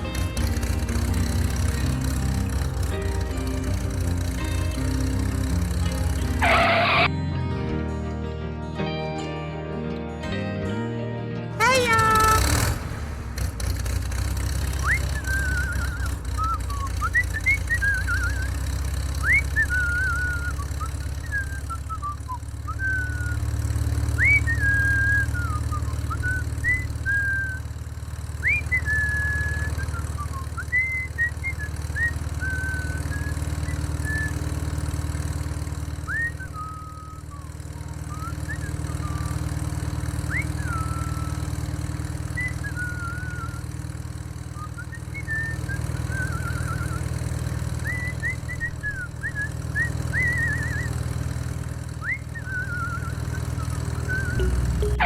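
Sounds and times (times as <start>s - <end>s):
engine humming: 0.0s - 7.2s, 11.6s - 55.0s
bird whistling: 14.8s - 18.6s, 19.2s - 23.4s, 36.1s - 39.4s, 40.3s - 41.4s, 47.9s - 51.0s, 52.0s - 55.0s.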